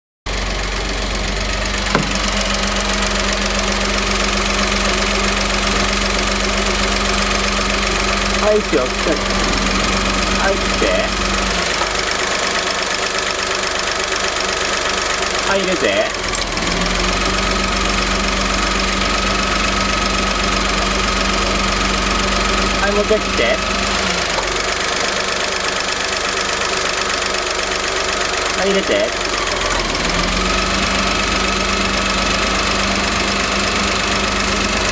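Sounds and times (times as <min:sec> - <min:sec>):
air conditioning compressor running: 0:00.3 - 0:34.9
car engine idling: 0:00.3 - 0:34.9.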